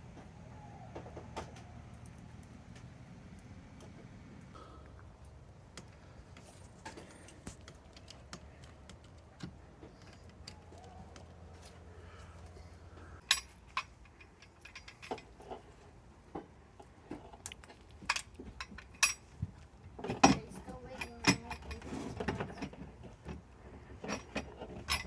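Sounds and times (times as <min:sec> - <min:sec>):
metal lock parts clattering: 0:13.2 - 0:15.8, 0:17.1 - 0:19.3, 0:20.0 - 0:25.0.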